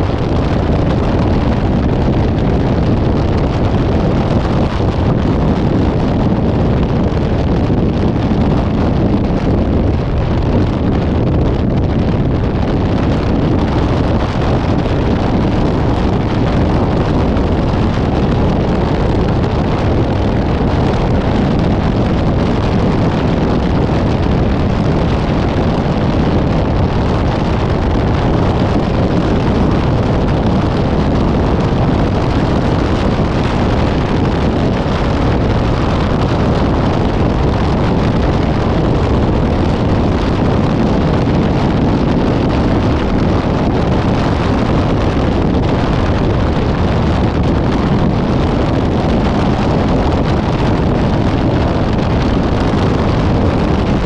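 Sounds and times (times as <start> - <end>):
vehicle road noise: 0.0 - 54.0
wind buffeting microphone: 0.0 - 54.0.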